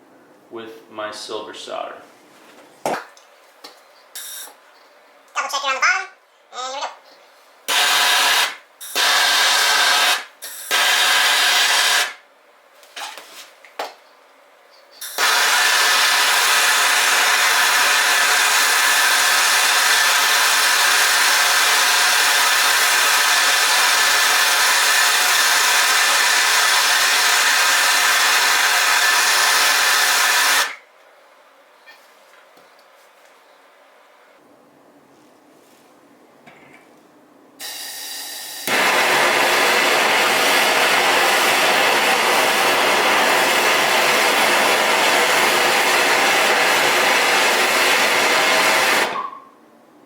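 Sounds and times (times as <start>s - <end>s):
gas torch flame hissing: 7.7s - 12.2s, 15.0s - 30.8s, 37.6s - 49.4s.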